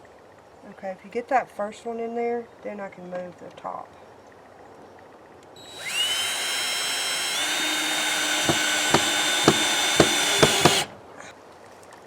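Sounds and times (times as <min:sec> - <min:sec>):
drill clutch clicks: 0:05.6 - 0:11.0
power drill whining: 0:05.6 - 0:11.0.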